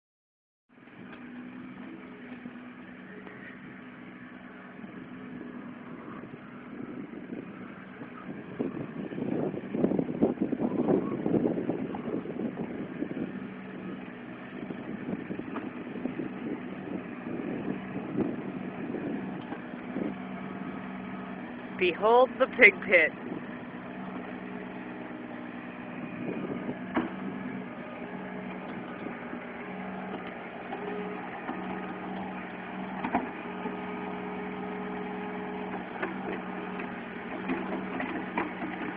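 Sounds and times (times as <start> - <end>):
backhoe engine idling: 0.8 - 38.9.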